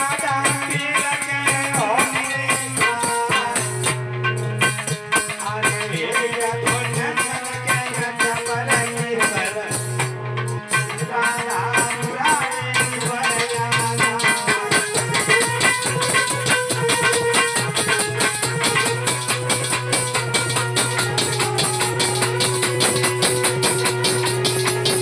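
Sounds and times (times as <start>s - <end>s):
rattling shaker percussion: 0.0s - 25.0s.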